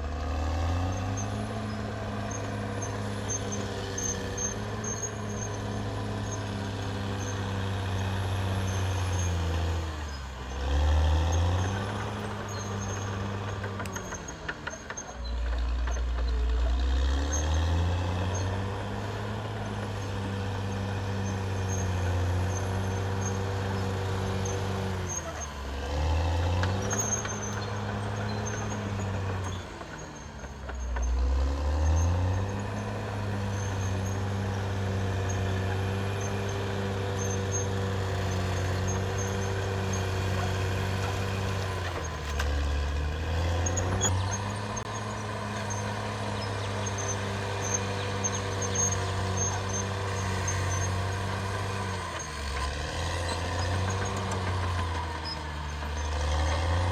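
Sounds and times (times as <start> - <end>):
bulldozer diesel engine working: 0.0 - 56.9.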